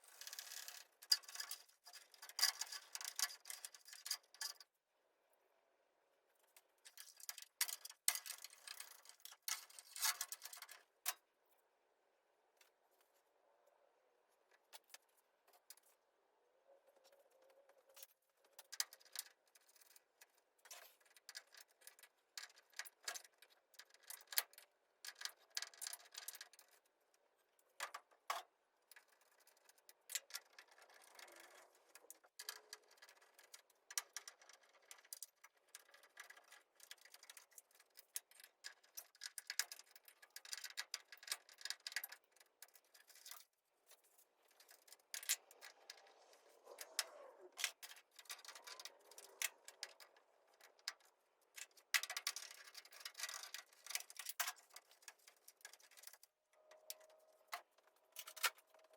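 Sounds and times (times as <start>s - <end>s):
hand tools clicking and scraping: 40.4s - 58.9s.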